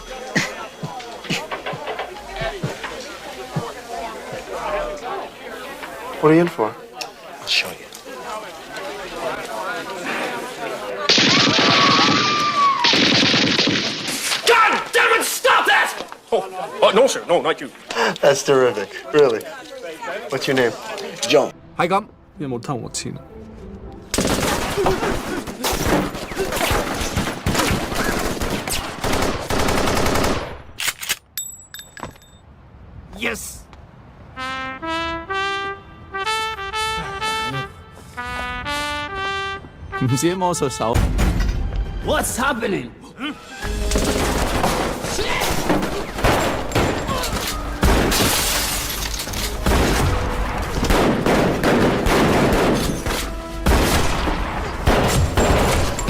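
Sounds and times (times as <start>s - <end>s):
music: 21.6s - 24.3s, 34.4s - 42.4s, 43.2s - 44.6s, 47.1s - 48.1s, 53.0s - 53.8s
gunshot bursts echoing: 49.6s - 56.0s.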